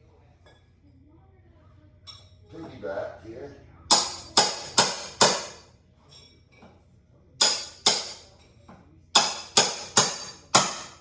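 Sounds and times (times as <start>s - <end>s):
hammer striking steel bar: 3.9s - 5.6s, 7.4s - 8.3s, 9.2s - 11.0s.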